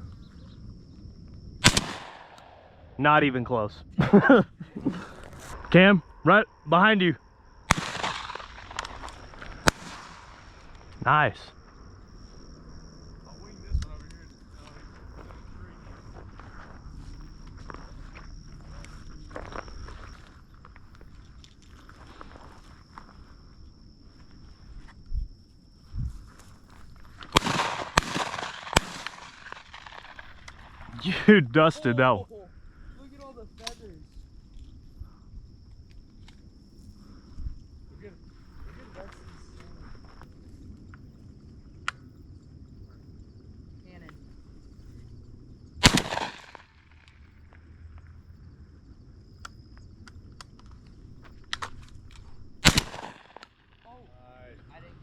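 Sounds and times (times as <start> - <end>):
shotgun shots: 1.6 - 2.8, 7.7 - 10.7, 27.3 - 30.8, 45.8 - 47.0, 52.6 - 53.7.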